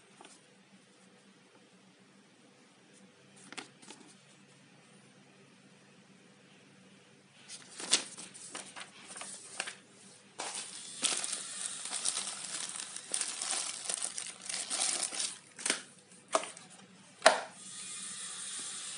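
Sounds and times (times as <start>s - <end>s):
packaging crinkling: 10.4s - 16.6s.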